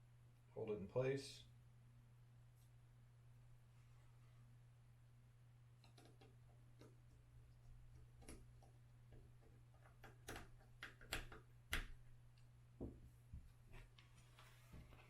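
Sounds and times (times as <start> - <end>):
screwdriver clicks and taps: 7.9 - 12.5.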